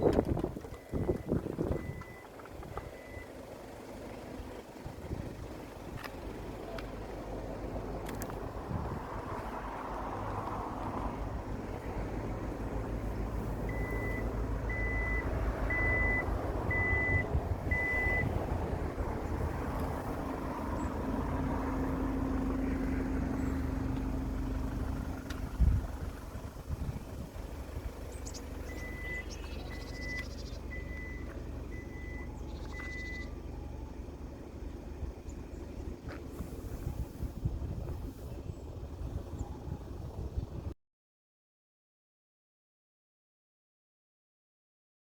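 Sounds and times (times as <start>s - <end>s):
low engine rumble: 0.0s - 40.8s
reversing beeper: 13.7s - 18.3s, 28.6s - 33.8s.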